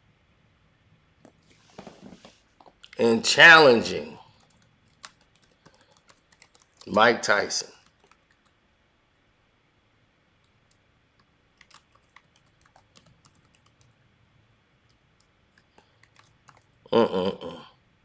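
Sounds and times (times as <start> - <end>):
faint clicks and taps: 1.2 - 3.0, 4.3 - 6.9, 7.8 - 8.6, 14.8 - 16.8.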